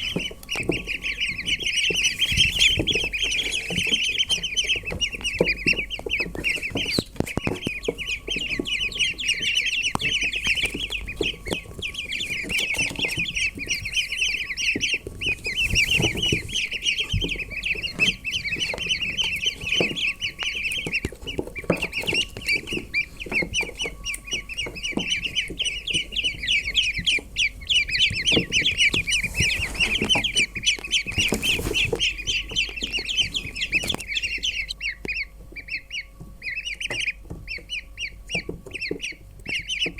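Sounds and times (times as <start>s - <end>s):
ducklings peeping: 0.0s - 39.9s.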